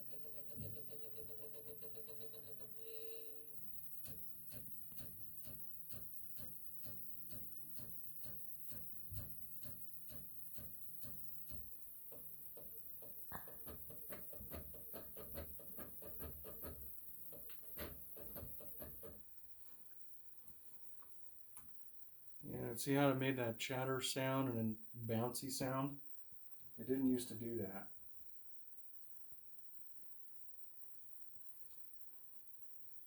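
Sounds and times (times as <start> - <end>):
stepper motors ticking: 3.9 - 18.9.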